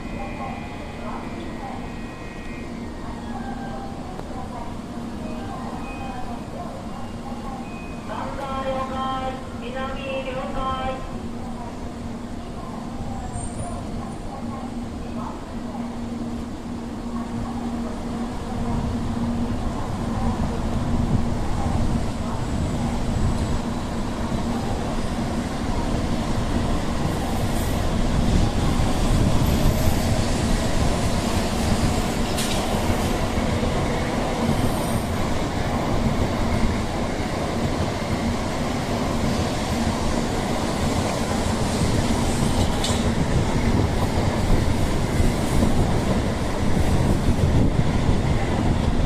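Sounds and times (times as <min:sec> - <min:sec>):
train wheels rumbling: 0:18.6 - 0:49.0.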